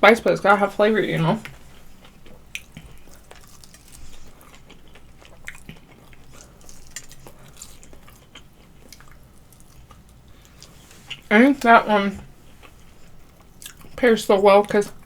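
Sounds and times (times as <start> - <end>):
chewing food: 0.5 - 11.3, 12.2 - 15.0.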